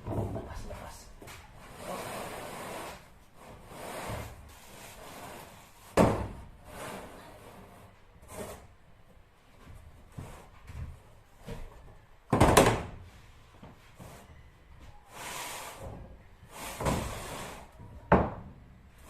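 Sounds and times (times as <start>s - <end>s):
building materials scraping: 1.5s - 8.9s, 15.1s - 17.8s.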